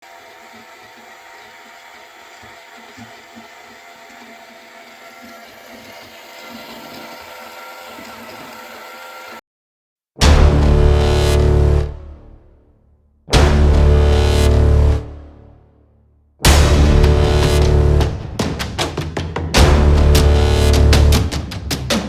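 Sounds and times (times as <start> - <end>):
small electric motor whining: 0.0 - 9.4
loud background music: 10.2 - 12.6, 13.3 - 15.6, 16.4 - 22.0.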